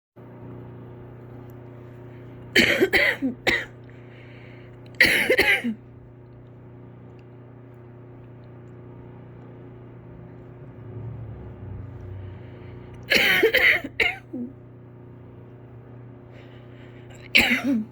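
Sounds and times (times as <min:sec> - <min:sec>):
steady low hum: 0:00.2 - 0:17.9
person coughing: 0:02.6 - 0:03.8, 0:05.0 - 0:05.8, 0:13.1 - 0:14.5, 0:17.1 - 0:17.9.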